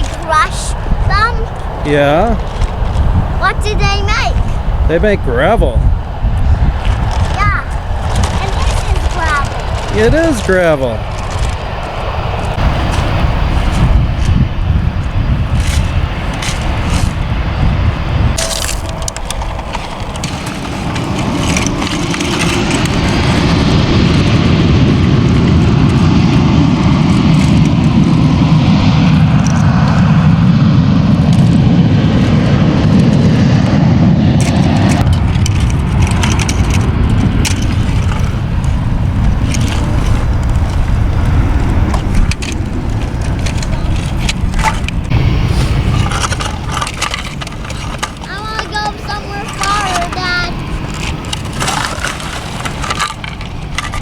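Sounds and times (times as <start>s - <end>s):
jet engines rumbling: 0.0s - 54.0s
toy trucks scraping gravel: 6.9s - 11.6s, 15.5s - 17.2s, 18.4s - 23.8s, 41.9s - 54.0s.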